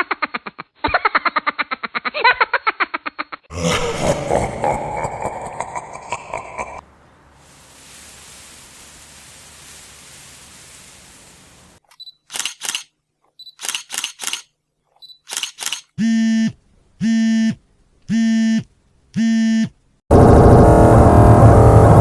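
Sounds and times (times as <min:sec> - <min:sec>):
camera shutter clicks: 0:11.9 - 0:12.9, 0:13.5 - 0:14.5, 0:15.1 - 0:15.9
loud noisy sound: 0:20.1 - 0:22.0.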